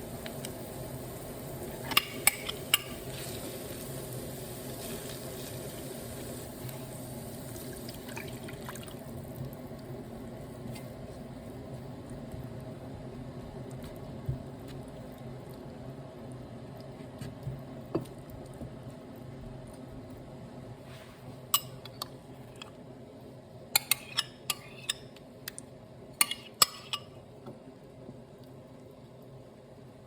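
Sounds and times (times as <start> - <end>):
utensils clinking against a pan: 1.8 - 3.0, 21.6 - 22.7, 23.8 - 25.1, 26.2 - 27.2.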